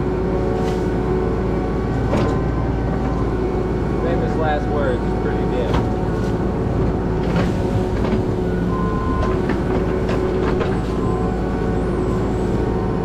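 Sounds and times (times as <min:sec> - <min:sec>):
diesel engine running: 0:00.0 - 0:13.0
wood cracking and knocking: 0:06.8 - 0:08.4, 0:09.2 - 0:10.9.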